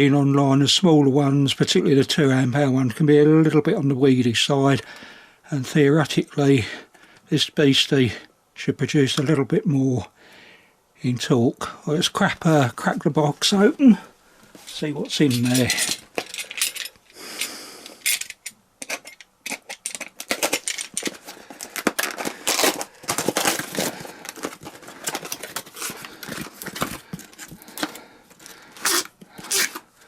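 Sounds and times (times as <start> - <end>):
packaging rustling: 18.1 - 30.0
cardboard box being opened: 20.2 - 28.0.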